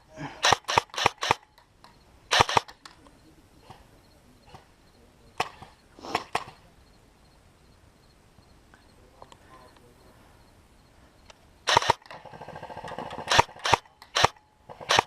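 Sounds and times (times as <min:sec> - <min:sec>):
airsoft gun shots: 0:00.4 - 0:01.5, 0:02.3 - 0:02.8, 0:11.7 - 0:15.0.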